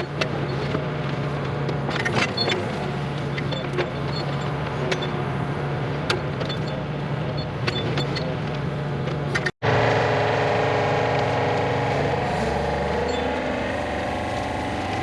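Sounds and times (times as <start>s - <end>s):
engine running: 0.0s - 15.0s
higher-pitched engine running: 9.6s - 15.0s.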